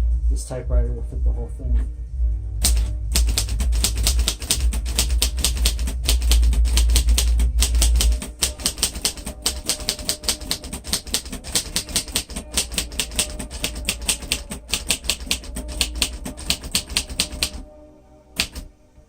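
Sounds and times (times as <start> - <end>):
manual typewriter typing: 2.6 - 17.6, 18.4 - 18.7
sharp click: 18.4 - 18.7.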